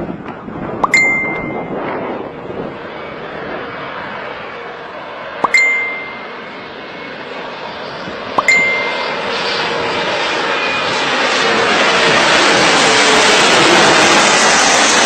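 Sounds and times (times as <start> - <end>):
bell-like ding: 0.8 - 1.7, 5.4 - 6.7, 8.4 - 9.5
short rising chirp: 5.4 - 6.6, 8.4 - 9.6.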